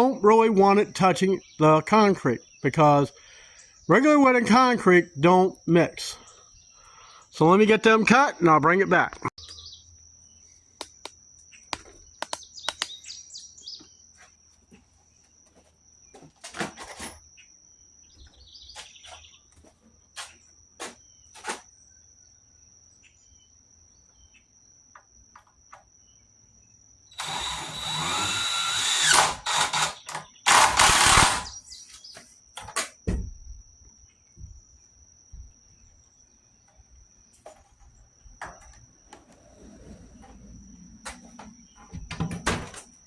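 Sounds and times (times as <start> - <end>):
power saw cutting wood: 27.2 - 31.6.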